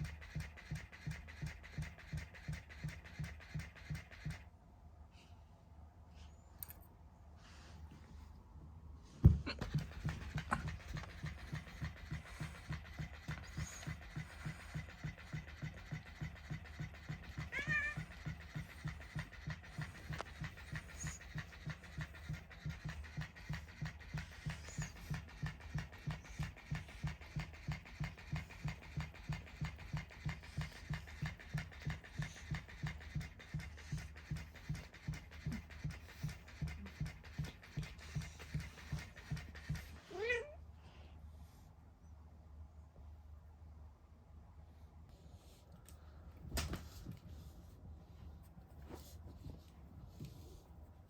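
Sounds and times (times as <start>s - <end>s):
toy motor pulsing hum: 0.0s - 4.5s, 9.8s - 39.8s.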